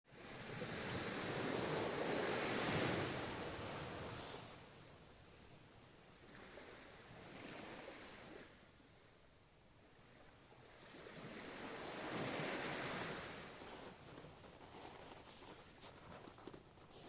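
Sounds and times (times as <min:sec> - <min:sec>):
ocean wave breaking: 0:00.2 - 0:04.9, 0:10.8 - 0:15.5.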